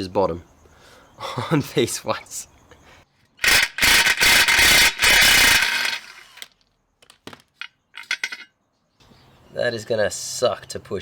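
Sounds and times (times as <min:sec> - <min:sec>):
hand tools ratcheting on metal: 0:03.4 - 0:06.5, 0:08.0 - 0:08.5.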